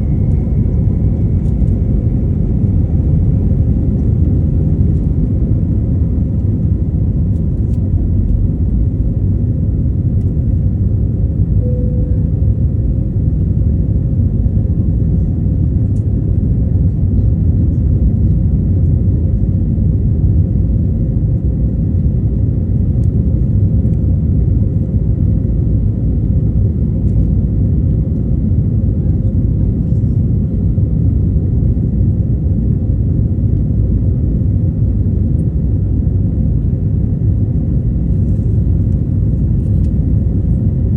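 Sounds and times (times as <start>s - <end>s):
airplane cabin rumble: 0.0s - 40.9s.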